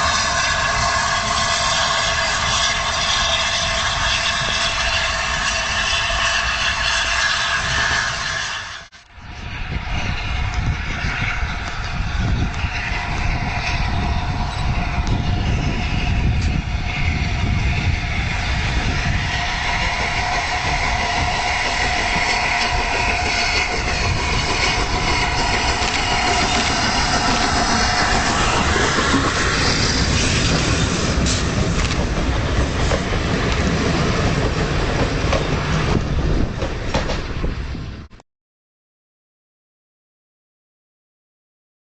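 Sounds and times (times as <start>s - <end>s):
steam hiss: 0.0s - 8.9s, 9.8s - 36.5s
steam locomotive rumble: 0.0s - 38.2s
wheels clicking over rail joints: 19.5s - 37.5s.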